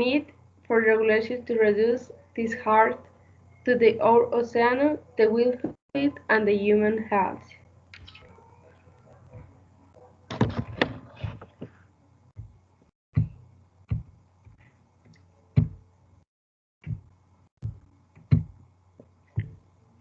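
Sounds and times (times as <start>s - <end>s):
irregular knocks and thumps: 10.3s - 15.8s, 16.8s - 19.6s.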